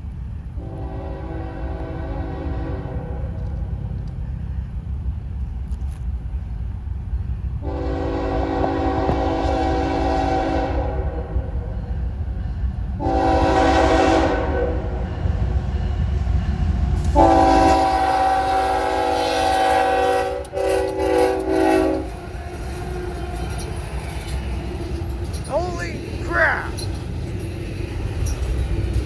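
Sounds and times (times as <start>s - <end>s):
low train rumble: 0.0s - 29.0s
locomotive air horn blasts: 0.6s - 3.3s, 7.6s - 11.2s, 13.0s - 14.8s, 17.2s - 22.2s.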